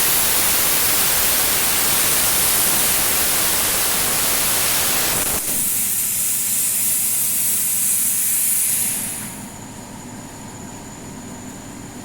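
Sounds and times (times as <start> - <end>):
plasma cutter torch hissing: 0.0 - 9.6
low machine hum: 5.4 - 12.0.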